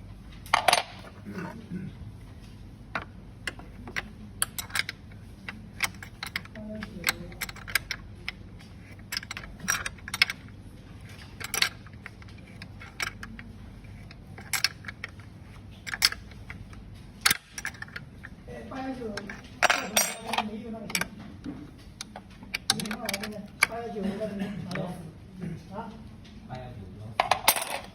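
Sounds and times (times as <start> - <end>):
small hard parts clicking: 2.9 - 23.8.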